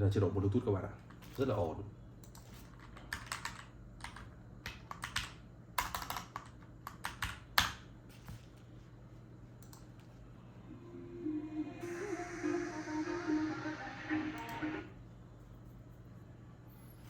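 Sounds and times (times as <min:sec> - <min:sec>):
mechanical keyboard clicks: 0:02.3 - 0:07.8.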